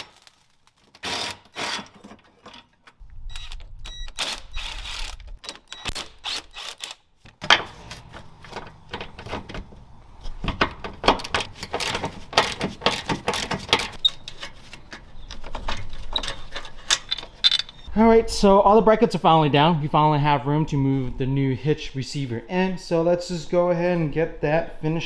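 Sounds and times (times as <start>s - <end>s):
metal clinks and knocks: 15.4s - 17.9s.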